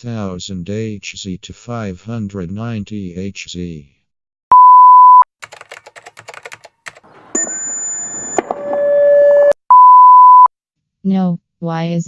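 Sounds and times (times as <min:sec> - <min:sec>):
steady test tone beep: 0:04.5 - 0:05.2, 0:07.4 - 0:10.5
keyboard-like clicking: 0:05.4 - 0:07.1.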